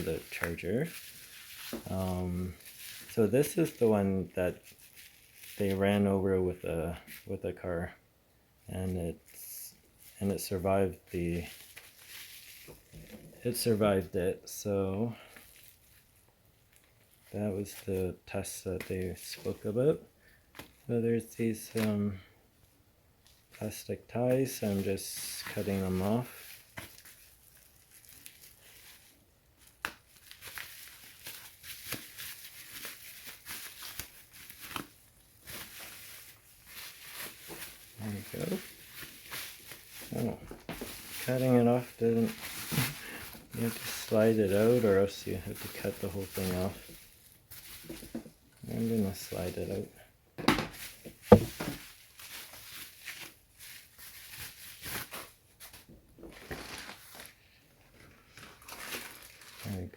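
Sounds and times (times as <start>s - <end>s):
plastic ties being snipped: 0.0s - 3.8s
plastic packaging crinkling: 0.0s - 7.4s, 9.2s - 14.6s, 15.2s - 19.8s, 23.2s - 49.9s, 50.7s - 59.9s.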